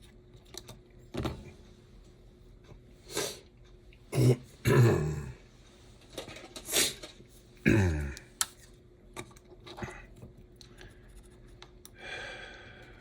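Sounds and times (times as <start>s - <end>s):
person grunting: 4.2s - 5.4s, 7.6s - 8.3s
person breathing: 12.0s - 13.0s.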